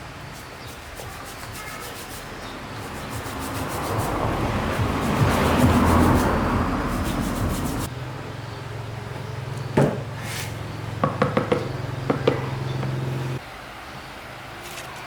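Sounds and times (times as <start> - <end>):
harsh scraping: 0.7 - 7.9
sharp knocks: 9.8 - 10.0, 11.0 - 13.0.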